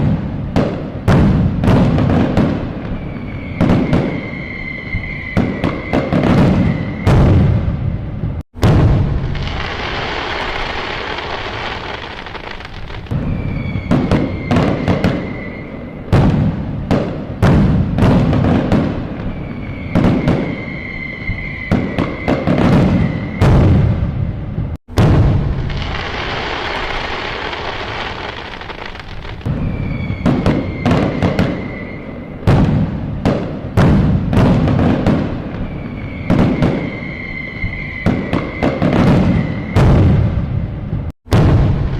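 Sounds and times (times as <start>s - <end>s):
firework bangs: 0.0s - 41.9s
thin firework whistle: 2.7s - 7.9s, 9.4s - 16.4s, 19.0s - 24.1s, 25.7s - 32.7s, 35.4s - 40.4s
firework crackling hiss: 9.1s - 15.8s, 25.4s - 32.1s.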